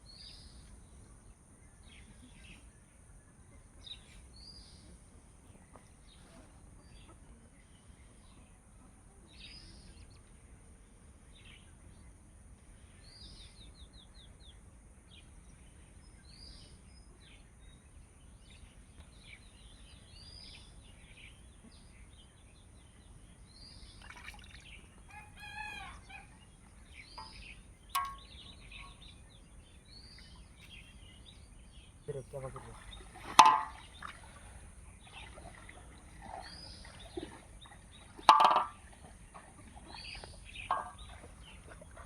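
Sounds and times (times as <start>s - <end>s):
outdoor background noise: 0.0s - 42.0s
birds calling: 16.0s - 42.0s
bird trill: 24.0s - 34.2s, 39.9s - 41.7s.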